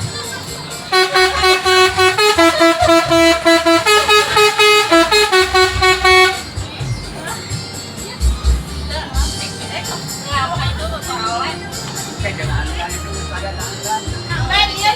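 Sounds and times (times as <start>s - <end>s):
bus musical horn tune: 0.8s - 7.5s.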